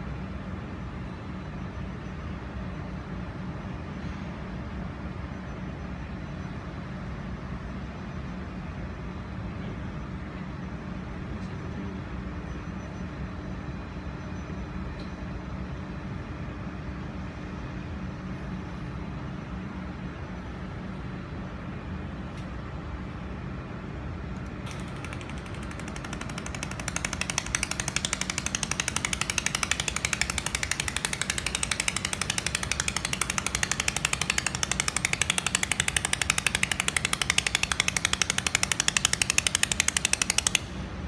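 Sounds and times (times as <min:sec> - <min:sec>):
welding machine hum: 0:24.4 - 0:40.9.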